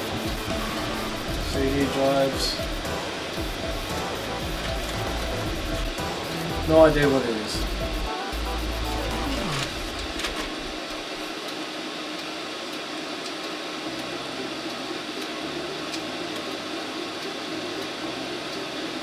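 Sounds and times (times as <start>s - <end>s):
low hum: 0.0s - 11.4s
computer fans whirring: 0.0s - 19.0s.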